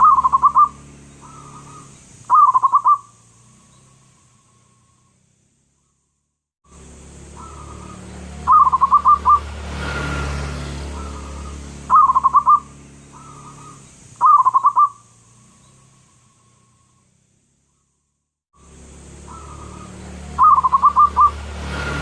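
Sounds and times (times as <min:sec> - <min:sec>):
low hum: 0:00.0 - 0:02.4, 0:03.0 - 0:22.0
dove cooing: 0:00.0 - 0:03.1, 0:07.4 - 0:09.5, 0:10.9 - 0:15.0, 0:19.2 - 0:21.4.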